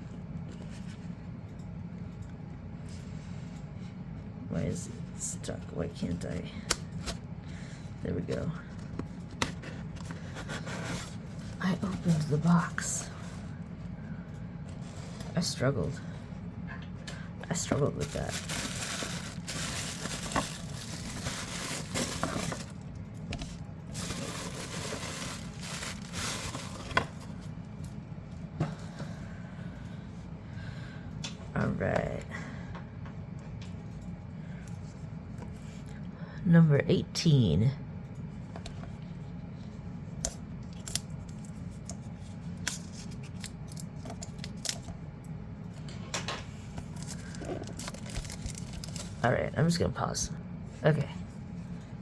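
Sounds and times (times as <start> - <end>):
steady low hum: 0.0 - 52.0
packaging rustling and crinkling: 17.8 - 27.5, 46.8 - 49.2.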